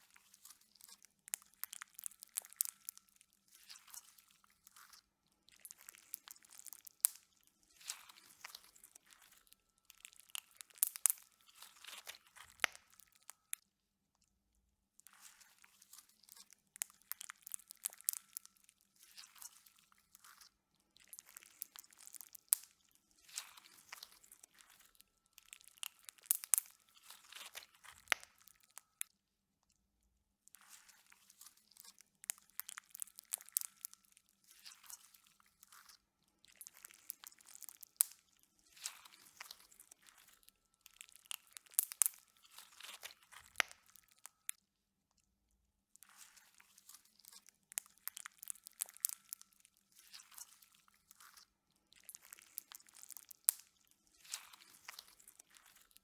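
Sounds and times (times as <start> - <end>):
slime crackling and popping: 1.3 - 3.0, 5.6 - 13.5, 16.8 - 18.5, 20.4 - 29.0, 31.8 - 34.0, 35.8 - 44.4, 47.2 - 49.5, 52.0 - 55.9.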